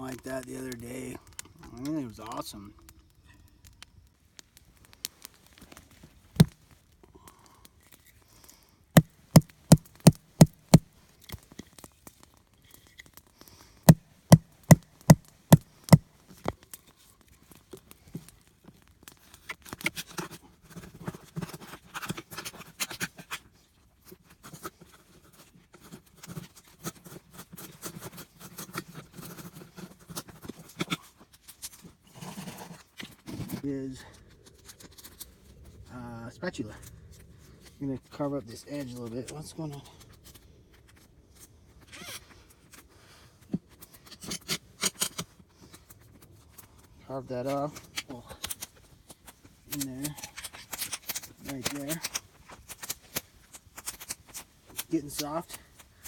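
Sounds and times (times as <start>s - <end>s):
sharp knocks: 9.4s - 10.9s, 13.9s - 16.0s.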